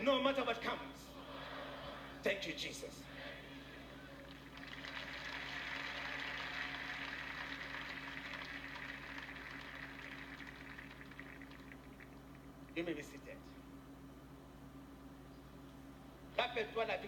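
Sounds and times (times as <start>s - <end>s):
steady low hum: 0.0s - 17.0s
congregation applauding: 4.1s - 12.2s.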